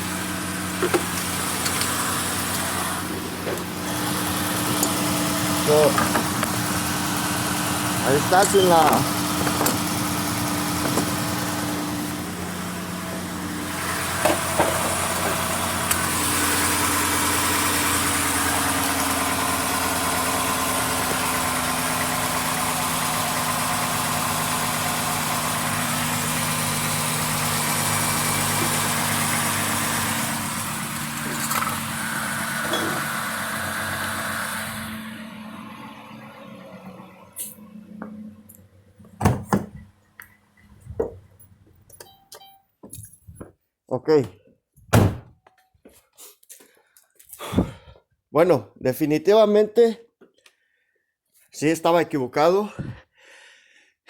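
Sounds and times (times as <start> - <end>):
car engine idling: 0.0 - 41.9.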